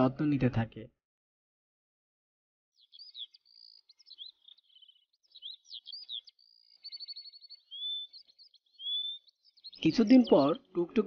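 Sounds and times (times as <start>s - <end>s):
songbirds chirping: 2.7s - 11.0s.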